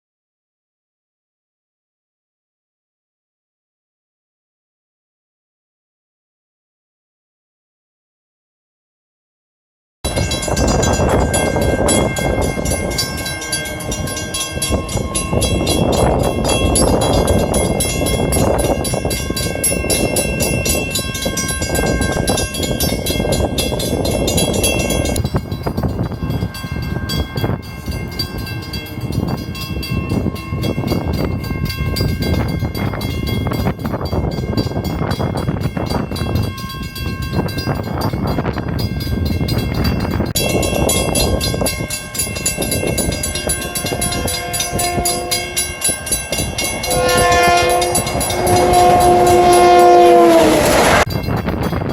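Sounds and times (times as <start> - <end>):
steady high tones: 10.1 - 32.2, 40.4 - 51.2
train rumbling and clattering: 10.1 - 51.9
train horn: 10.3 - 22.5, 41.2 - 51.1.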